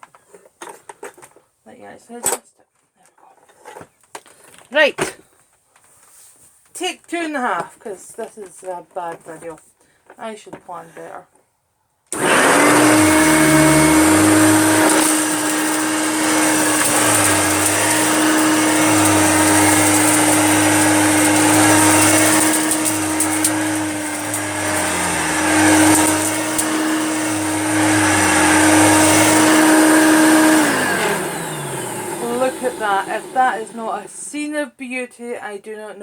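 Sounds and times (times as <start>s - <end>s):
upright vacuum cleaner running: 12.2s - 34.2s.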